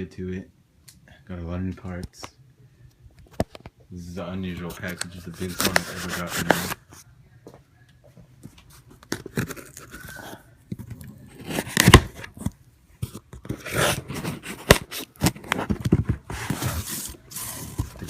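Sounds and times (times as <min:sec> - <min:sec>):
packing tape tearing: 0:11.3 - 0:12.4.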